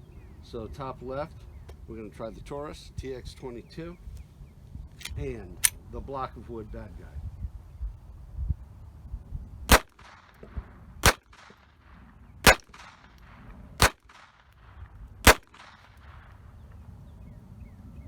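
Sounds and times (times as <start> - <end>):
pistol shots with echo: 9.7 - 16.4.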